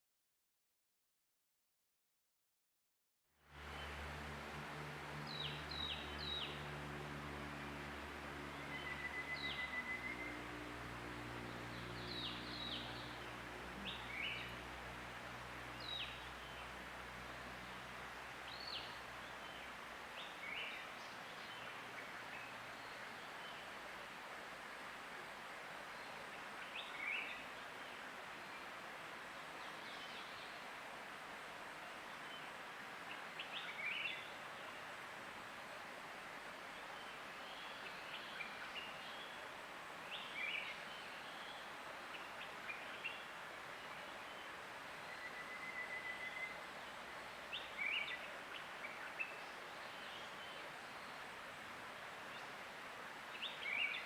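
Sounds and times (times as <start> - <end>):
flowing water: 3.4 - 54.0
bird calls: 8.6 - 10.4.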